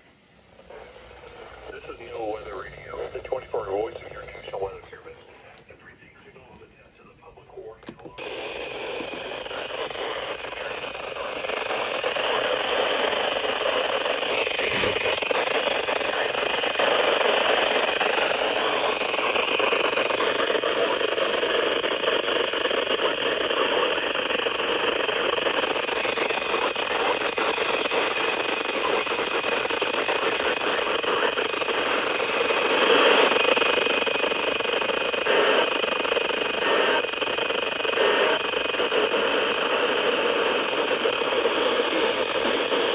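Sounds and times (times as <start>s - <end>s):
radio static hiss: 0.0s - 42.9s.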